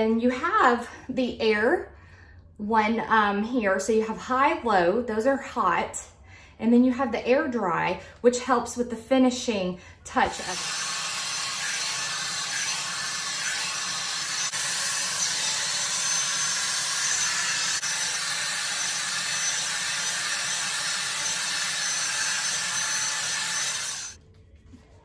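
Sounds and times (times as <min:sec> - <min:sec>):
hot-air dryer brush fan hum: 0:10.1 - 0:24.2.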